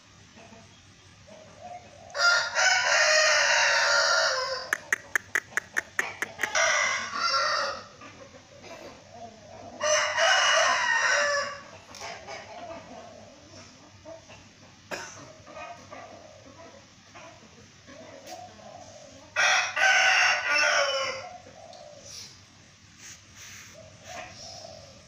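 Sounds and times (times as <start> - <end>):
rooster crowing: 2.2 - 4.9, 6.4 - 8.0, 9.8 - 11.7, 19.4 - 21.4.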